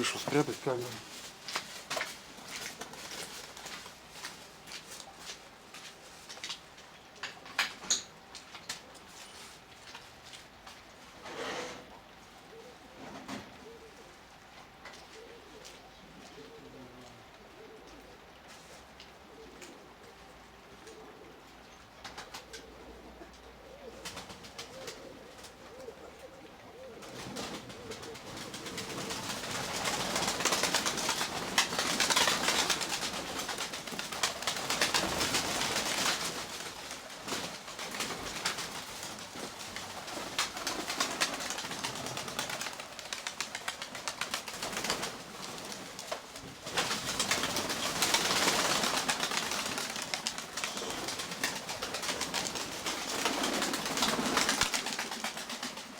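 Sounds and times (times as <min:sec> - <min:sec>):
rain pattering on a roof: 0:00.0 - 0:11.0, 0:27.2 - 0:55.9
pigeons cooing: 0:11.8 - 0:55.9.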